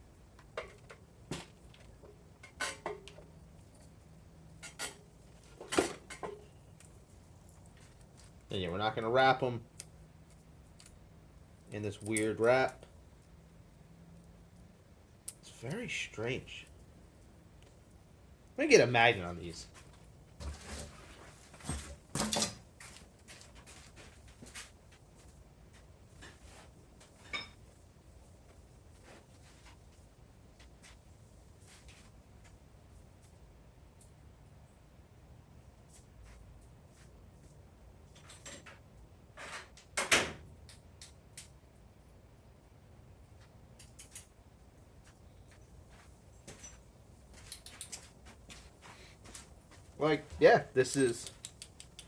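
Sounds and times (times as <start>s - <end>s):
metal tools clinking: 27.2s - 27.6s, 50.8s - 51.6s
metal parts and tools clinking: 50.7s - 52.0s.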